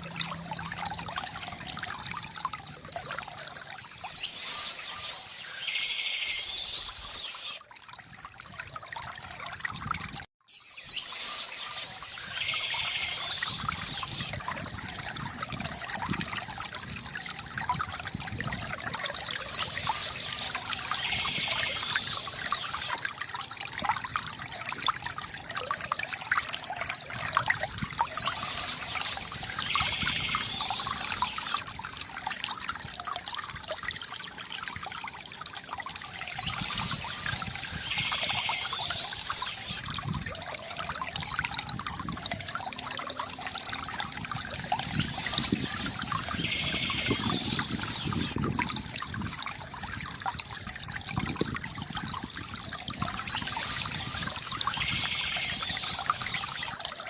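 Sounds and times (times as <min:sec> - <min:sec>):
stream water trickling: 0:00.0 - 0:57.0
bird singing: 0:03.9 - 0:07.6, 0:10.5 - 0:14.3, 0:19.3 - 0:23.0, 0:28.0 - 0:31.6, 0:36.3 - 0:39.9, 0:44.7 - 0:48.4, 0:53.1 - 0:56.8.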